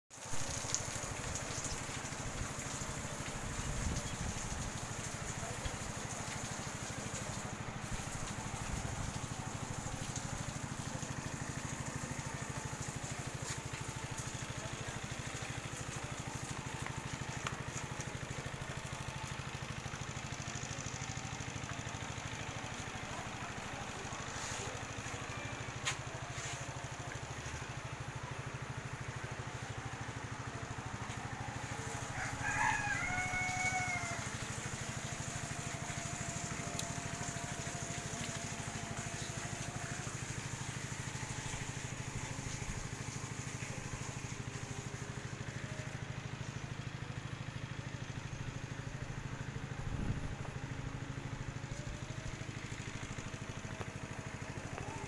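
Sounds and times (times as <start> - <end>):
low mechanical hum and hiss: 0.2 - 55.0
rooster crowing: 31.5 - 34.8.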